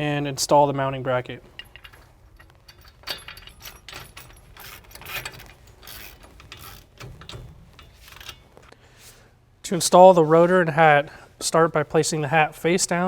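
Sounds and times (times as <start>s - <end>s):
metal-on-metal clinks: 1.5s - 8.5s
ratchet wrench clicking: 2.7s - 8.4s.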